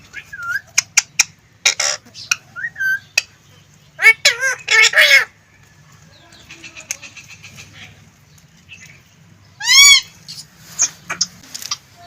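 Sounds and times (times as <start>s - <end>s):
parakeet chirps and clicks: 0.1s - 3.4s
parakeet squawking: 0.2s - 3.4s, 4.0s - 5.4s, 9.6s - 11.4s.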